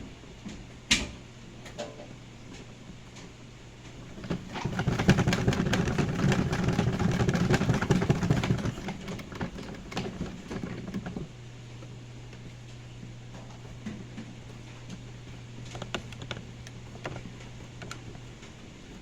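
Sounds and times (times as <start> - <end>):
washing machine motor hum: 0.0 - 19.0
washing machine rattling and knocking: 4.0 - 11.4.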